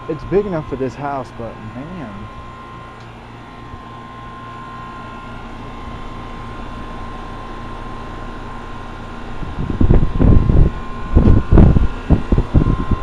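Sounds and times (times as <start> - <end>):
air conditioner unit humming: 0.0 - 13.0
wind buffeting microphone: 9.2 - 13.0.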